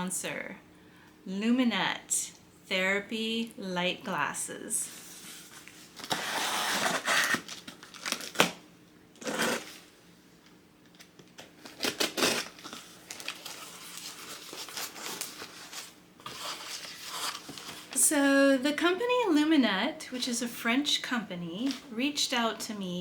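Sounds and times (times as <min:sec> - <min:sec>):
packaging rustling and tearing: 0:05.3 - 0:08.6, 0:09.2 - 0:09.9, 0:10.8 - 0:18.0.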